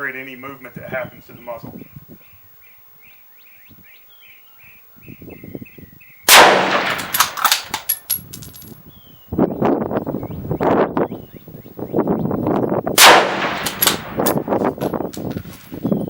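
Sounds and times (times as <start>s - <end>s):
rifle shot echoing: 6.3s - 8.1s, 13.0s - 14.6s.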